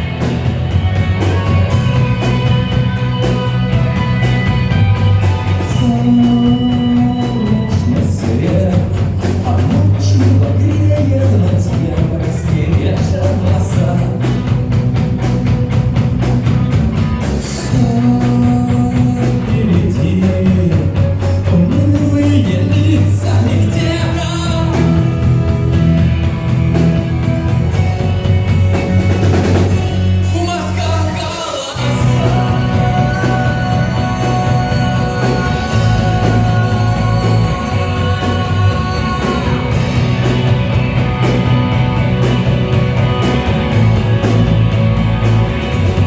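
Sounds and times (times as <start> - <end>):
drum kit: 0.0 - 46.0
guitar: 0.0 - 46.0
person singing: 5.2 - 14.5, 17.4 - 26.3, 30.2 - 40.8.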